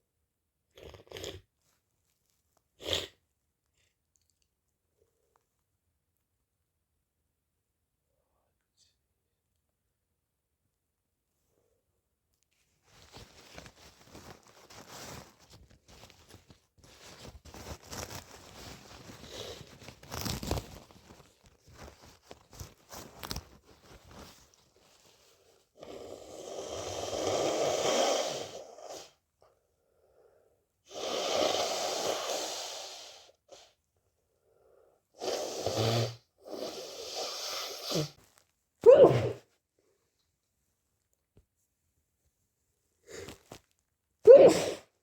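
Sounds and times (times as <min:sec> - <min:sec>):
tissue rustling and crinkling: 0:12.5 - 0:25.8, 0:38.1 - 0:38.8, 0:39.6 - 0:44.1
nose blowing into tissue: 0:25.8 - 0:29.2, 0:30.9 - 0:33.6, 0:35.2 - 0:38.2, 0:38.9 - 0:39.4, 0:44.3 - 0:45.0
person sneezing: 0:38.8 - 0:39.5, 0:44.2 - 0:45.0.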